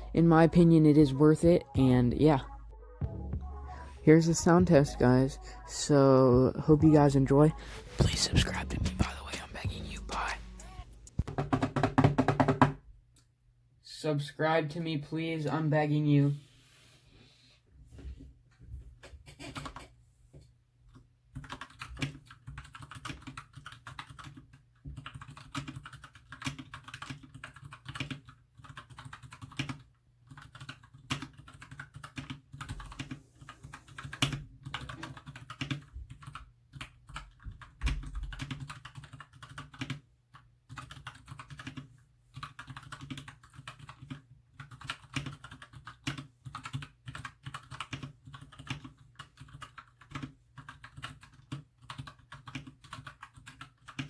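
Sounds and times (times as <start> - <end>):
typing on mechanical keyboard: 20.9 - 54.0.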